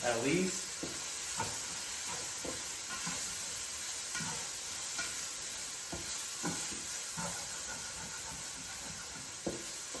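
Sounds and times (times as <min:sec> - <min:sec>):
mushrooms sizzling in frying pan: 0:00.0 - 0:10.0
utensil scraping pan: 0:05.9 - 0:10.0.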